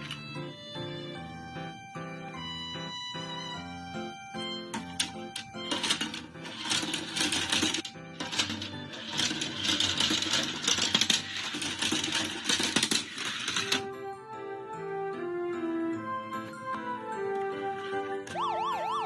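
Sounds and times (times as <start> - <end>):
background music: 0.0 - 19.0
small mechanism clicking and clattering: 4.8 - 13.9.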